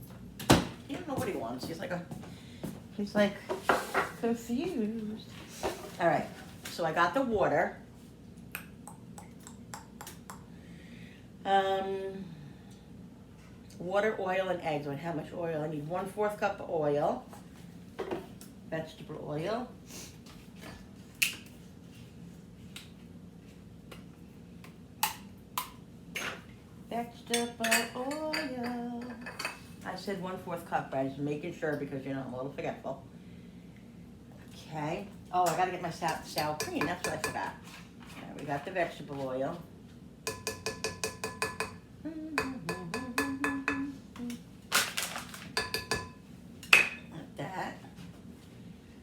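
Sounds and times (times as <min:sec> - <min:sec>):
utensil clinking against bowl: 0:35.4 - 0:37.5, 0:40.3 - 0:41.8, 0:42.4 - 0:43.9, 0:45.6 - 0:47.0.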